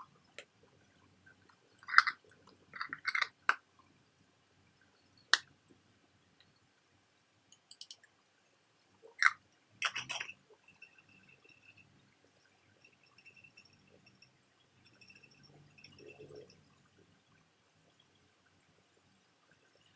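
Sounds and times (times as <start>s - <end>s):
metal parts clinking against a dish: 1.8s - 2.2s, 2.8s - 3.4s, 9.2s - 11.8s.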